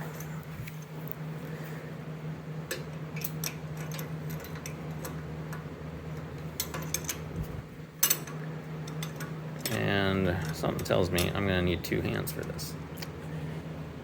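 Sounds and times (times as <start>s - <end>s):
steady low hum: 0.0s - 14.0s
metallic clicks of steel parts: 2.7s - 5.6s, 6.2s - 7.2s, 8.0s - 11.4s.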